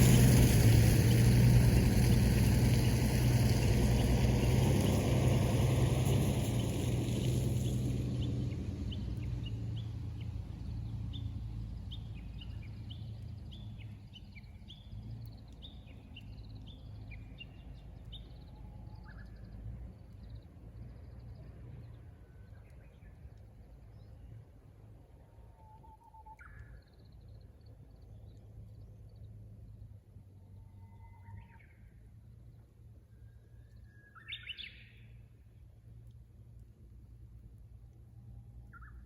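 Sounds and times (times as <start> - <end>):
low engine rumble: 0.0 - 25.6
bird whistling song: 33.6 - 35.1.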